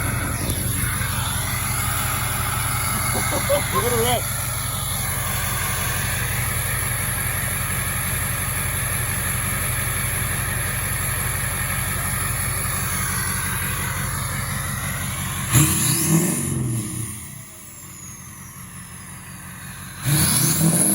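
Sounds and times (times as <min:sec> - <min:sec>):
turbo whine and whistle: 0:00.0 - 0:07.5, 0:12.1 - 0:20.9
diesel truck engine running: 0:00.0 - 0:20.9.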